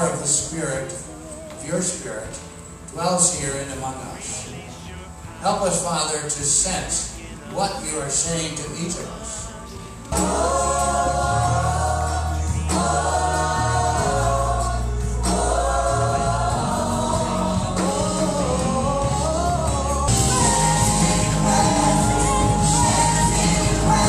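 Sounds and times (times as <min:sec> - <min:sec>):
choir singing gospel: 0:00.0 - 0:24.0
steady bass line: 0:10.1 - 0:24.0.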